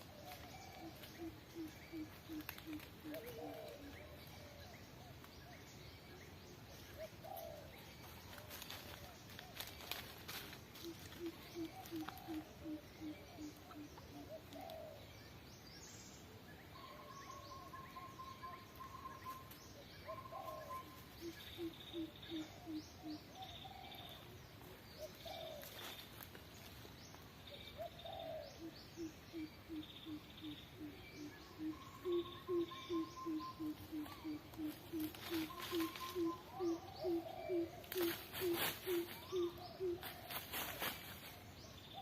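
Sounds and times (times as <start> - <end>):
rural background: 0.0 - 42.0
bird trills and chirps: 27.1 - 42.0.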